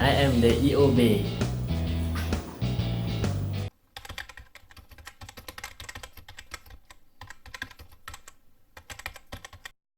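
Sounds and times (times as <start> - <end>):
typing on computer keyboard: 3.9 - 9.8.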